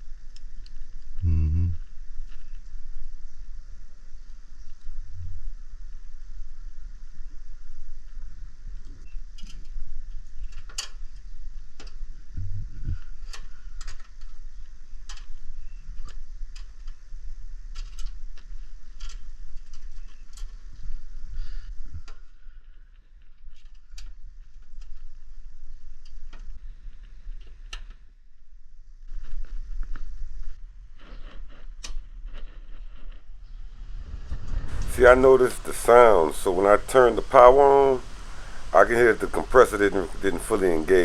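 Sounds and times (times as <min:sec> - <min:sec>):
steady low hum: 0:00.0 - 0:17.7, 0:32.0 - 0:41.0.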